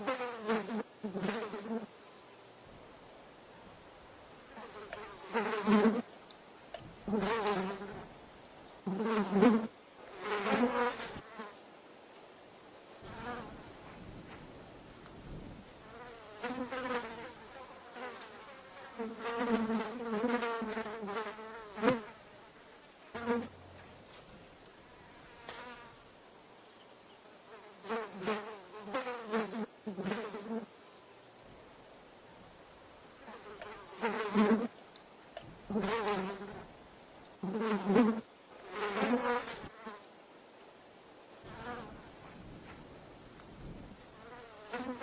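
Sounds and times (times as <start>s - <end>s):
fly buzzing: 0.0s - 1.9s, 4.4s - 6.1s, 7.0s - 8.1s, 8.8s - 11.6s, 13.0s - 13.6s, 15.8s - 26.1s, 27.0s - 30.8s, 33.2s - 34.7s, 35.7s - 36.7s, 37.4s - 40.0s, 41.4s - 42.2s, 44.0s - 45.0s.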